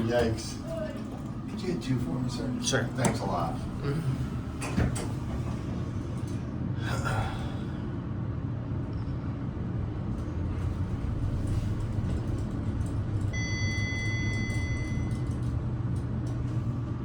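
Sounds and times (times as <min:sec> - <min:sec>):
elevator car humming: 0:00.0 - 0:17.0
electronic beep: 0:13.3 - 0:15.3.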